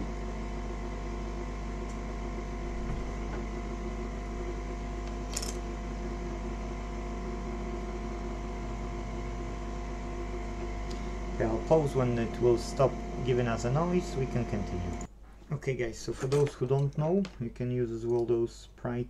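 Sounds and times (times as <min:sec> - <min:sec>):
machine hum and whir: 0:00.0 - 0:19.0.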